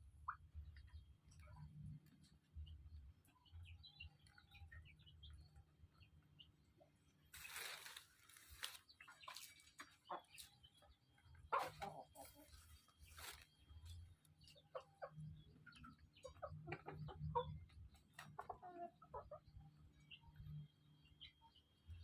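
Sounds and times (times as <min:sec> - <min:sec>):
chickens clucking and chirping: 0:00.0 - 0:22.0
rustling: 0:07.3 - 0:09.8, 0:11.6 - 0:14.0.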